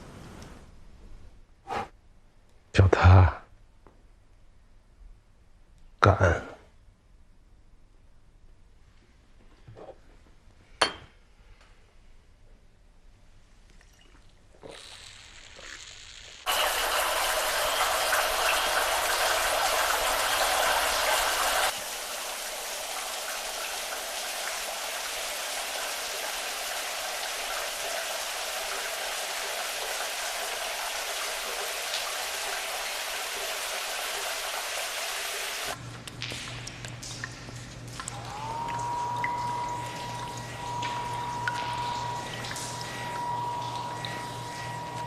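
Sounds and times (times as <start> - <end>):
rushing water: 16.5 - 35.8.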